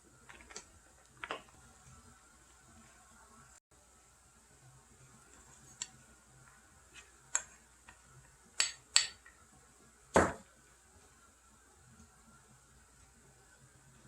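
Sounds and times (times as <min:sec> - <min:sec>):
dish set down knock: 0:10.2 - 0:10.4.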